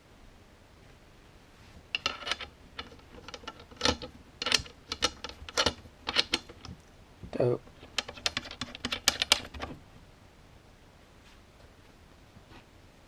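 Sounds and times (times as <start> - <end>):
sharp mechanical clicks and knocks: 2.0 - 6.8, 7.7 - 9.8.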